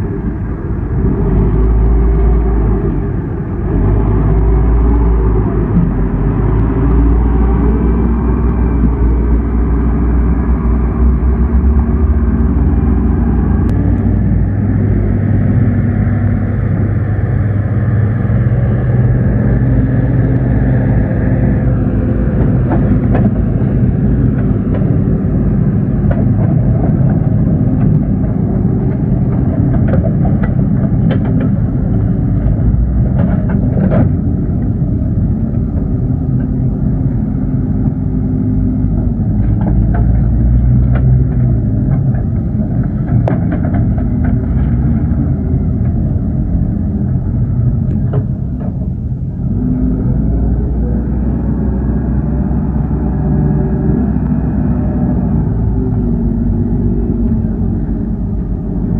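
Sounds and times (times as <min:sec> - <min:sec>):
excavator diesel engine running: 0:00.0 - 0:58.9
sharp clicks and knocks: 0:22.3 - 0:34.9, 0:38.8 - 0:46.2, 0:47.2 - 0:49.2.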